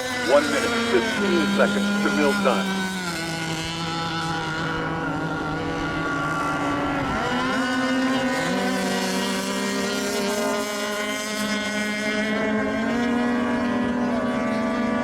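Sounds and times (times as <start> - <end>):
model boat engines whining: 0.0 - 15.0.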